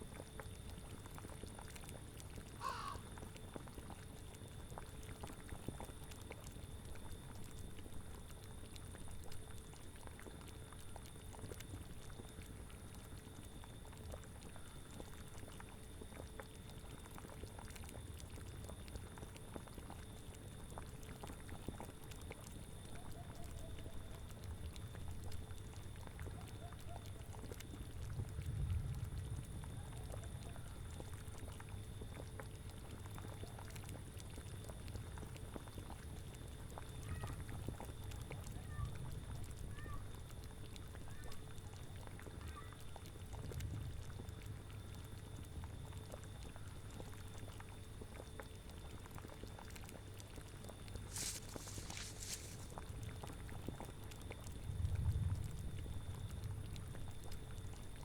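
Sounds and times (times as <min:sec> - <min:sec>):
low rumbling wind: 0:28.1 - 0:29.9, 0:54.6 - 0:57.2.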